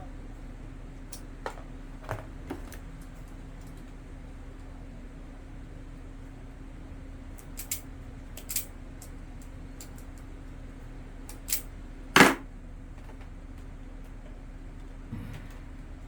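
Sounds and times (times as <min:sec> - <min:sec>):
steady low hum: 0:00.0 - 0:16.0
small tools clicking and snapping: 0:07.4 - 0:07.8, 0:08.4 - 0:10.2, 0:11.3 - 0:11.7.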